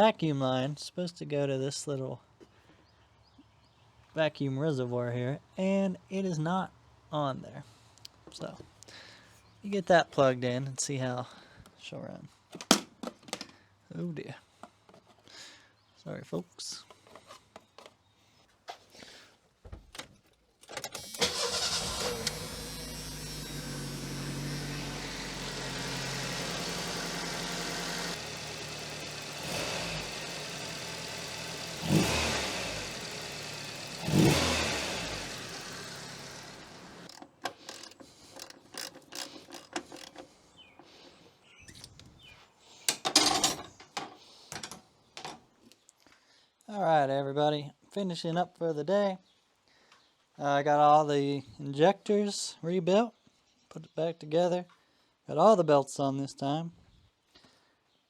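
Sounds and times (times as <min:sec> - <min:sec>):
car engine starting and idling: 0:20.9 - 0:37.2
engine revving: 0:21.0 - 0:37.2.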